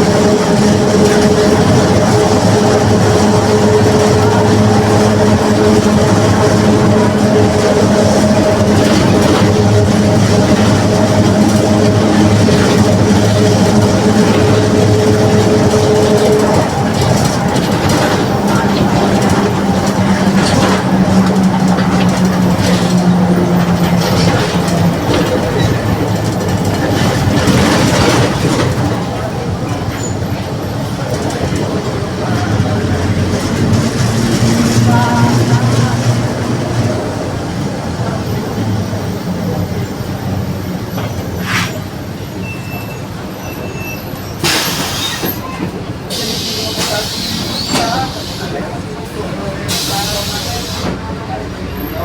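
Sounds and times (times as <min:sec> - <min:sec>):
bus differential whine: 0:00.0 - 0:52.0
road rumble: 0:00.0 - 0:52.0
air brake hiss: 0:41.4 - 0:41.8, 0:44.4 - 0:45.4, 0:46.1 - 0:48.6, 0:49.7 - 0:51.0.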